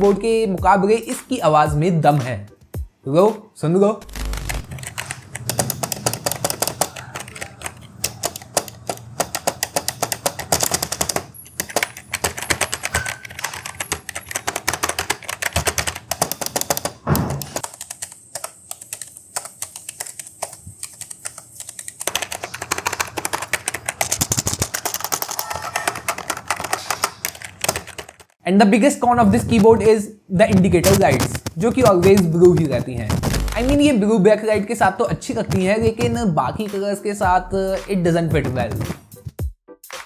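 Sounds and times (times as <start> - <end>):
keyboard typing: 4.0 - 28.4, 29.1 - 36.3.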